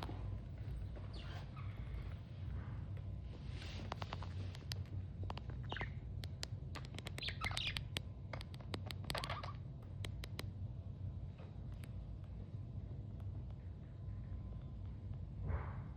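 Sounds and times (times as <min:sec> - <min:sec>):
steady low hum: 0:00.0 - 0:15.9
sharp clicks: 0:04.0 - 0:10.6
budgerigar chirping: 0:05.6 - 0:06.0, 0:06.9 - 0:08.0.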